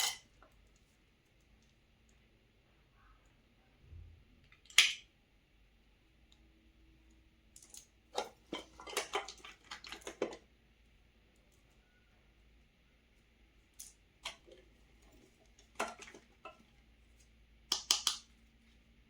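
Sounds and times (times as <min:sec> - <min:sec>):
toy packaging snapping: 0:04.6 - 0:05.1, 0:17.7 - 0:18.3.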